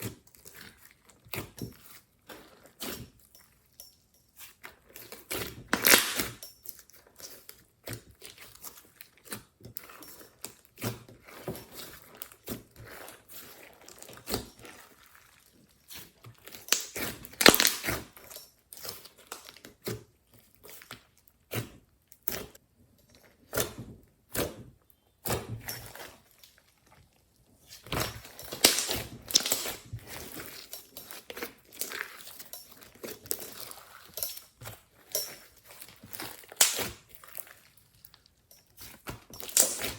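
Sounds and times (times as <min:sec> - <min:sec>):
hands squishing slime: 0:07.2 - 0:22.5, 0:23.3 - 0:39.9.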